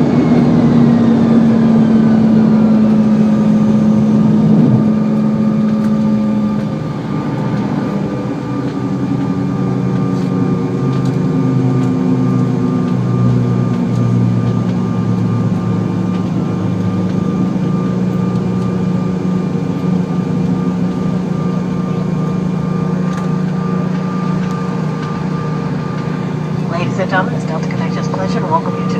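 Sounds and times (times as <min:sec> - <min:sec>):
jet engines droning: 0:00.0 - 0:28.9.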